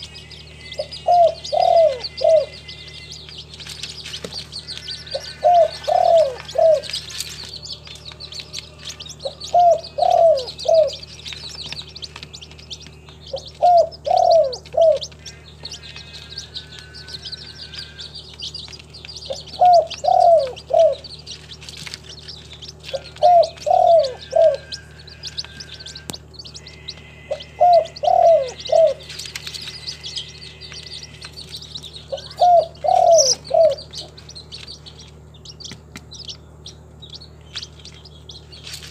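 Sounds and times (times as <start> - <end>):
small birds chirping: 0.0 - 38.9
dove cooing: 0.8 - 3.0, 4.5 - 7.1, 8.7 - 11.3, 13.3 - 18.1, 19.3 - 21.2, 22.7 - 31.3, 32.1 - 34.4.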